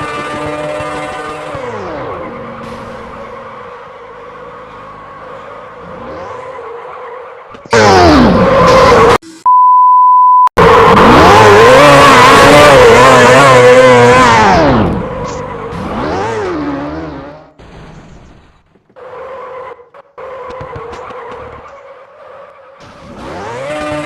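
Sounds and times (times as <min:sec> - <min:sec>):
vehicle engine revving: 0:00.0 - 0:09.1, 0:10.6 - 0:18.4, 0:19.8 - 0:24.0
steady beep tone: 0:09.2 - 0:10.6.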